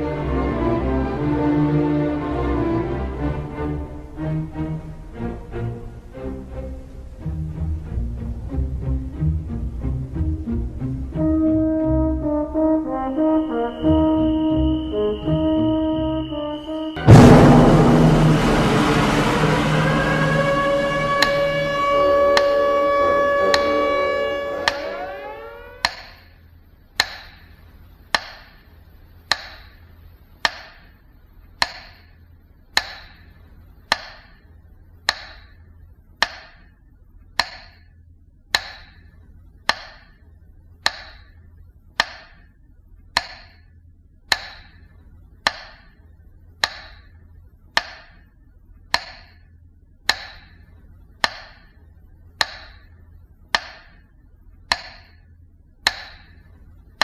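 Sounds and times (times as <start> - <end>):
metronome ticking: 22.3 - 26.3, 27.0 - 27.5, 28.1 - 28.6, 29.2 - 29.8, 30.4 - 30.9, 31.6 - 32.1, 32.7 - 34.4, 35.0 - 36.7, 37.4 - 37.9, 38.5 - 40.2, 40.8 - 41.4, 42.0 - 42.5, 43.2 - 43.7, 44.3 - 46.0, 46.6 - 48.3, 48.9 - 49.4, 50.1 - 54.1, 54.7 - 55.2, 55.8 - 57.0.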